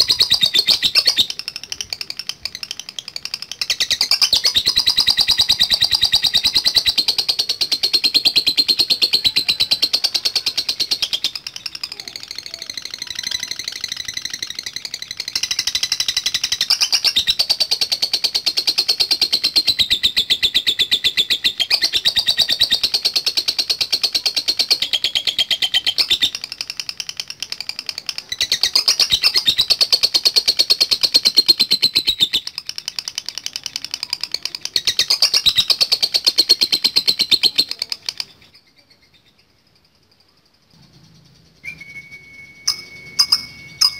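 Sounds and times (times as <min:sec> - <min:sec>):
lovebird fast high trill: 0:00.0 - 0:26.6, 0:40.8 - 0:43.9.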